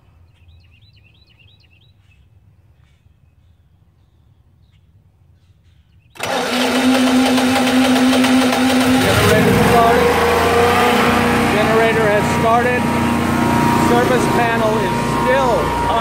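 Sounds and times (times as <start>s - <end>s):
generator engine running: 6.2s - 16.0s.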